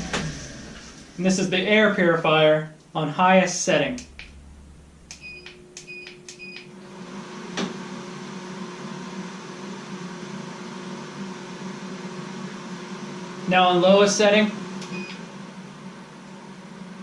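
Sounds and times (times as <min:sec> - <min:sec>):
fan humming: 0:00.0 - 0:17.0
air filter unit beeping: 0:03.9 - 0:07.0, 0:14.8 - 0:15.3
click: 0:05.1 - 0:06.7, 0:14.8 - 0:15.2.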